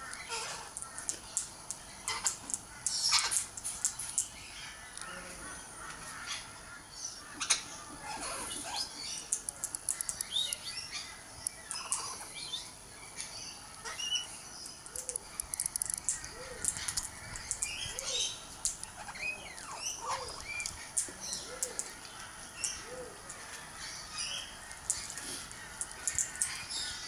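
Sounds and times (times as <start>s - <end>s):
sharp clicks: 9.3s - 10.7s, 14.8s - 19.8s, 25.8s - 26.6s
low arching bird call: 13.8s - 27.0s.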